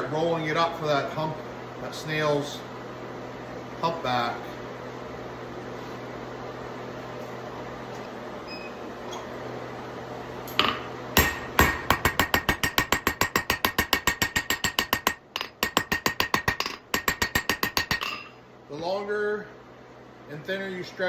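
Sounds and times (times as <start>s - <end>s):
steady hum: 0.0s - 21.0s
hammer ringing on anvil: 10.5s - 18.4s.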